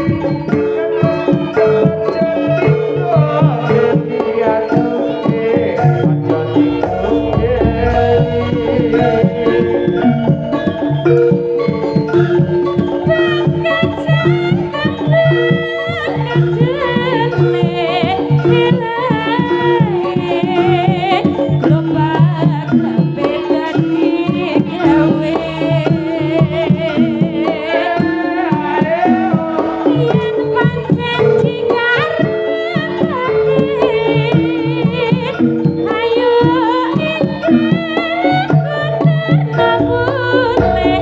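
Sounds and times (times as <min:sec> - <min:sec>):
hand drums rhythm: 0:00.0 - 0:41.0
high wavering melody: 0:02.3 - 0:28.5, 0:39.2 - 0:41.0
metal gong-chime notes: 0:06.3 - 0:12.7, 0:39.6 - 0:41.0.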